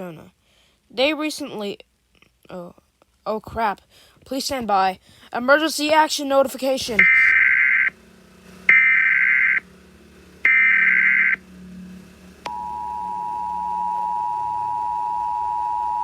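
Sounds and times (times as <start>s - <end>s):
warbling digital header tones: 7.0s - 7.9s, 8.7s - 9.6s, 10.4s - 11.4s
two-tone attention signal: 12.5s - 16.0s.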